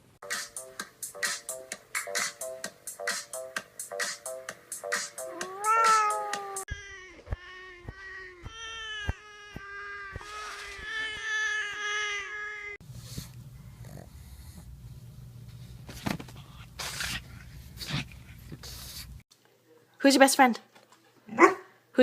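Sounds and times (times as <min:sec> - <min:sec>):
song made of cat meows: 0:05.2 - 0:12.3
steady low hum: 0:12.8 - 0:19.2.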